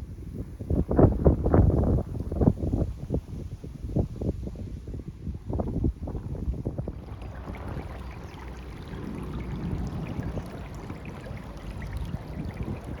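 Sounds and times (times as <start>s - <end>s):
wind buffeting microphone: 0.0s - 13.0s
faint crackles: 6.8s - 13.0s.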